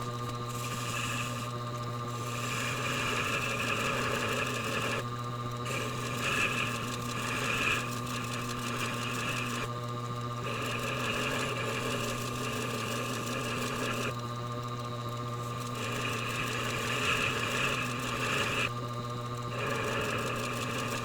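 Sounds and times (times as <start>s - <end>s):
sharpening machine hum: 0.0s - 21.0s
blade scraping on honing wheel: 0.5s - 1.5s, 15.4s - 18.7s.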